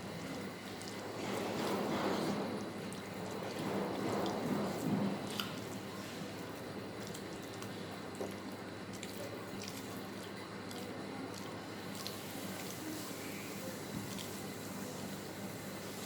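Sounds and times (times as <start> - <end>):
chewing food: 2.8 - 5.9, 6.5 - 12.8, 14.0 - 14.5.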